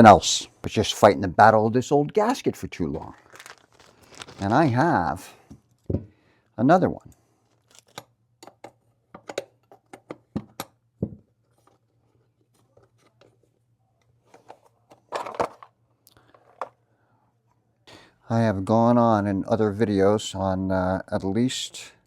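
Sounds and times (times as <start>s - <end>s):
clatter of small parts: 3.2s - 4.5s, 7.4s - 10.7s, 14.3s - 16.8s.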